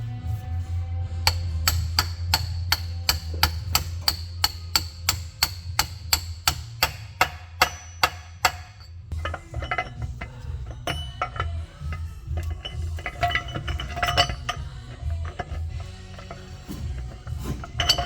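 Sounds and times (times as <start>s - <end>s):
hammer tapping on metal: 1.3s - 18.0s
metal parts clinking: 7.9s - 18.0s.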